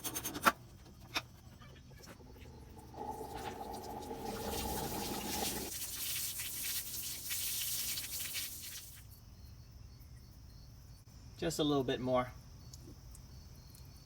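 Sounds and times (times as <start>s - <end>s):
water hissing and splashing: 2.6s - 9.1s.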